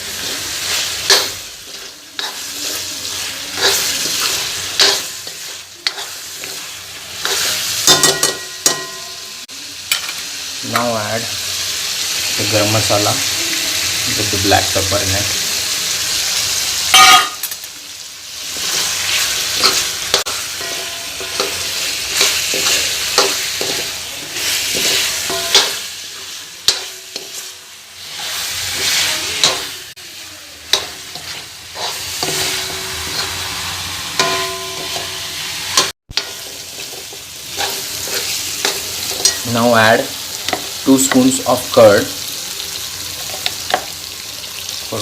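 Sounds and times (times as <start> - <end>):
chicken sizzling in oil: 0.0 - 45.0
spoon scraping metal pan: 0.6 - 6.6, 30.7 - 39.4.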